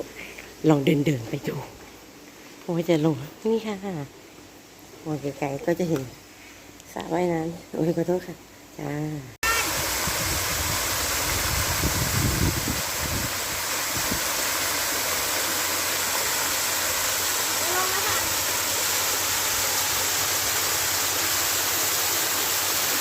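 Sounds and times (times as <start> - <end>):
waterfall rushing: 9.4 - 23.0.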